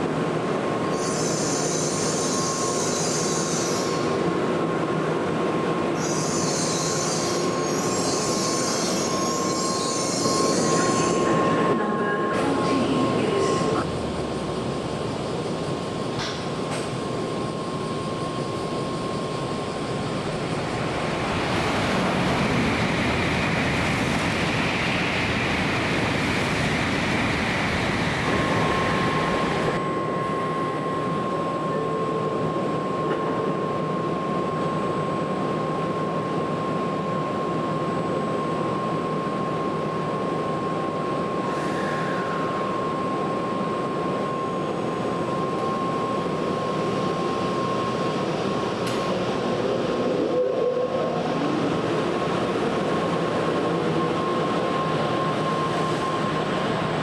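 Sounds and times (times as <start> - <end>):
train rumbling past: 0.0 - 35.5.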